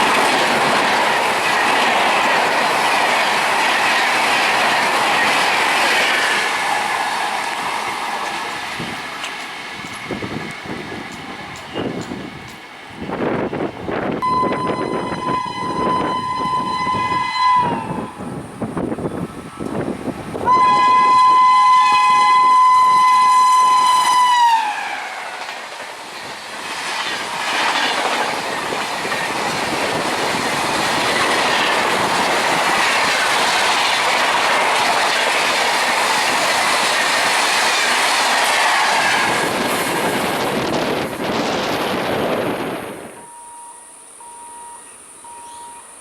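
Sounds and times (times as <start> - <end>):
wheels clacking on rail joints: 0.0 - 12.9, 24.0 - 41.8
train rushing past: 0.0 - 46.0
train horn: 14.2 - 18.4, 20.4 - 25.3.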